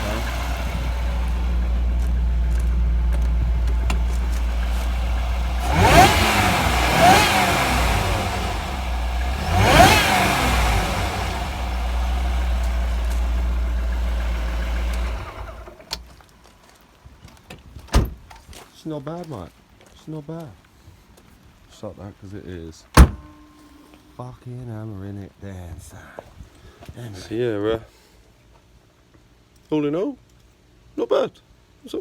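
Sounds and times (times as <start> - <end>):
car engine idling and revving: 0.0 - 16.1, 23.0 - 23.4.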